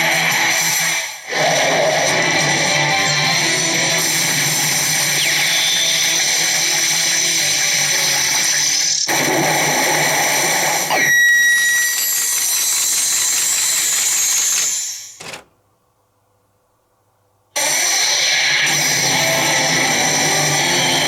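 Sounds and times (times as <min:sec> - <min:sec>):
steady high tone: 0:10.9 - 0:12.5.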